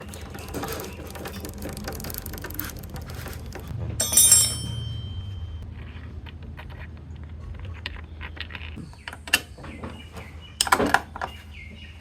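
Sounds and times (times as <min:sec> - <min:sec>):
motorcycle drive chain rattling: 0:00.0 - 0:05.6
high-pitched metallic ringing: 0:03.7 - 0:05.7.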